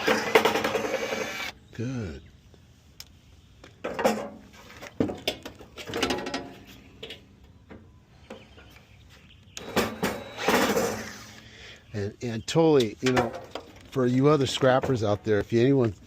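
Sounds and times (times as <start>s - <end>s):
cordless drill running: 0.0s - 1.6s, 9.6s - 11.4s.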